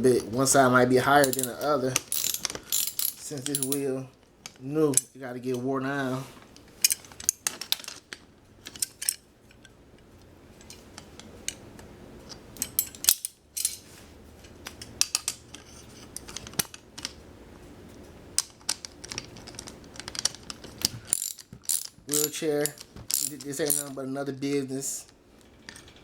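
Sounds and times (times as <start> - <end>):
faint steady hum: 0.0 - 26.0
metallic clinks of tools and parts: 1.2 - 3.8, 12.6 - 13.9, 21.1 - 24.0.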